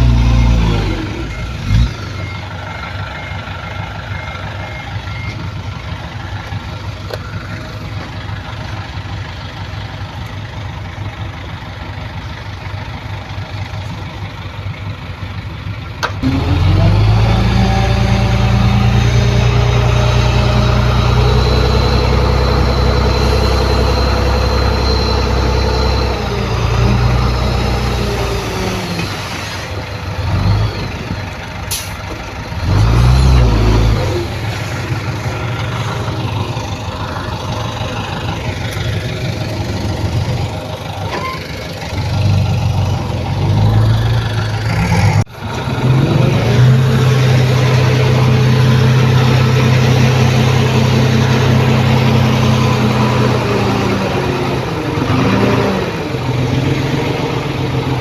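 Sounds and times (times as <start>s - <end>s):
reversing alarm beeping: 0.0s - 5.7s, 16.2s - 28.8s
heavy diesel machinery running: 0.0s - 58.0s.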